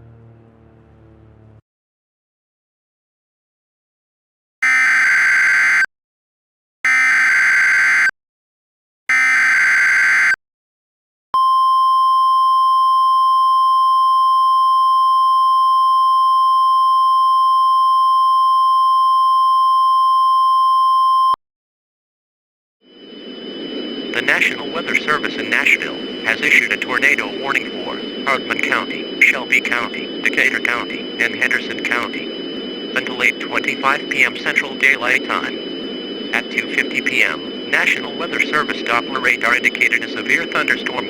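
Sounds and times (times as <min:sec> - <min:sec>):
steady attention tone: 0:22.9 - 0:41.0
warbling digital data tones: 0:23.2 - 0:41.0.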